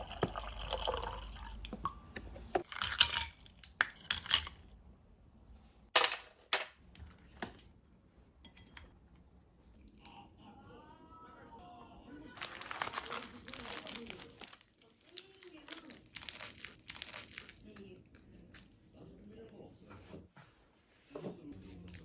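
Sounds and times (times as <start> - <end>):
dishes and utensils clicking: 8.4 - 8.9.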